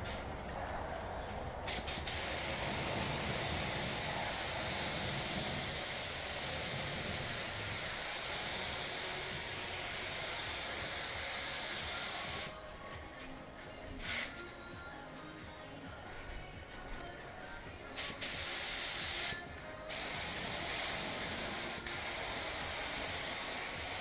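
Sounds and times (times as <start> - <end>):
spray gun air hiss: 1.6 - 12.6, 14.0 - 14.4, 17.9 - 24.0.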